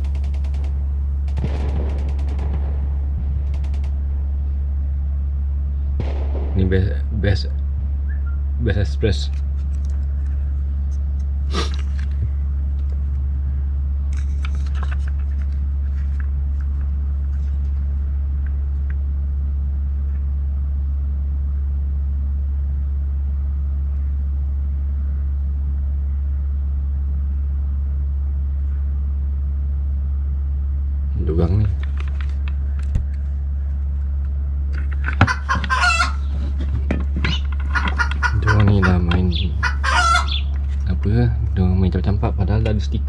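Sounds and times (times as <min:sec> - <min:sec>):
steady low hum: 0:00.0 - 0:20.1, 0:30.6 - 0:43.0
faint rustles and taps: 0:34.7 - 0:41.1.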